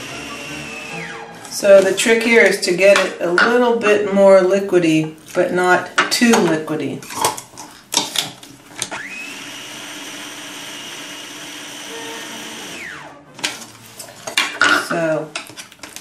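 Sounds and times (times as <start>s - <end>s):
electric blender motor: 0.0s - 1.6s, 8.7s - 13.8s.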